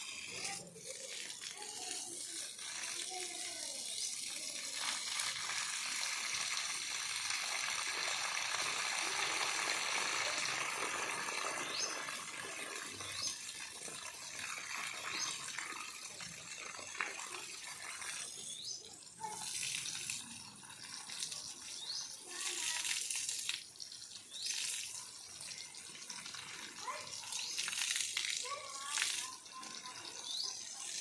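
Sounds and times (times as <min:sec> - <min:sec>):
water spraying onto plants: 0:00.0 - 0:31.0.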